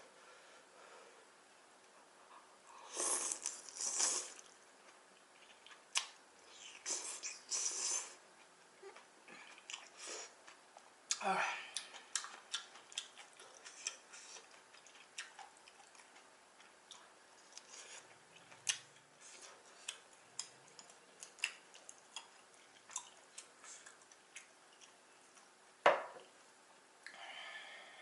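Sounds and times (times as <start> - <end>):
wet chewing sounds: 3.0 - 11.2, 11.8 - 25.5.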